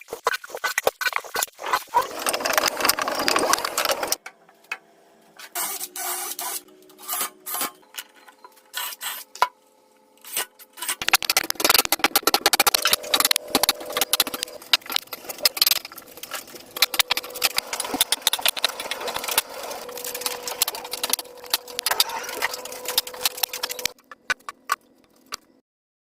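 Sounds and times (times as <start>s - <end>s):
rapid clattering: 1.2s - 4.2s, 11.0s - 24.1s
small machine humming: 1.6s - 25.6s
clicks: 11.0s - 25.5s.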